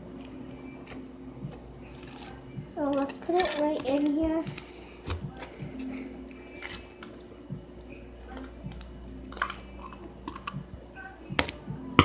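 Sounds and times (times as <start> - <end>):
steady low hum: 0.0 - 12.0
slime squishing: 6.5 - 7.2.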